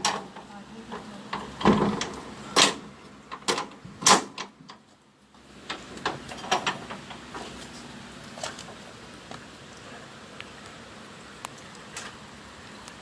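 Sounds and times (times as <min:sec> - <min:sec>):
sharp clicks and knocks: 0:00.0 - 0:04.8, 0:05.6 - 0:07.7.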